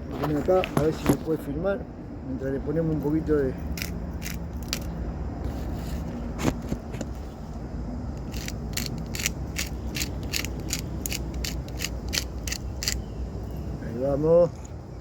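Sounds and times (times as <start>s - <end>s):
ratchet-like mechanical clicking: 8.2s - 13.0s.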